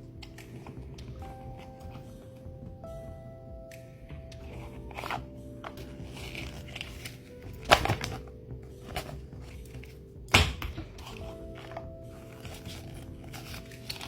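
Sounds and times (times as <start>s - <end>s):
background music: 0.0s - 14.0s
packaging clicks and taps: 4.4s - 14.0s.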